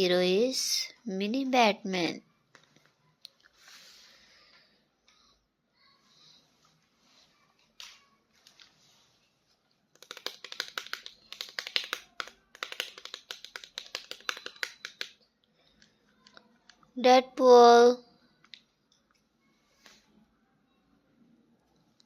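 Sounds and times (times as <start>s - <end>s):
plastic clicking and crackling: 10.0s - 16.9s.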